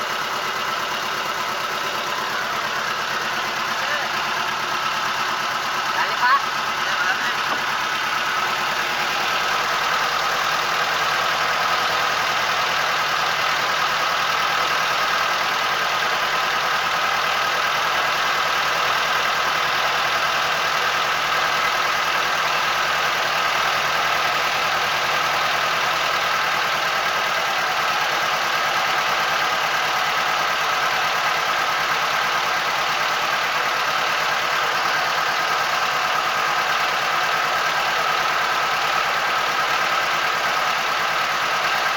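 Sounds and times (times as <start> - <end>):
boat engine running: 0.0 - 17.5.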